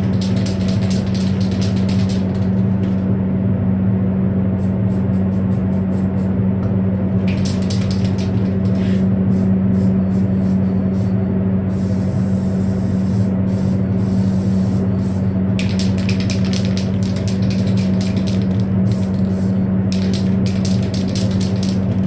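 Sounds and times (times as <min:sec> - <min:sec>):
spray booth hum: 0:04.6 - 0:22.0
spray can clicks: 0:07.3 - 0:09.0, 0:15.6 - 0:22.0
aerosol can spraying hiss: 0:11.7 - 0:15.2.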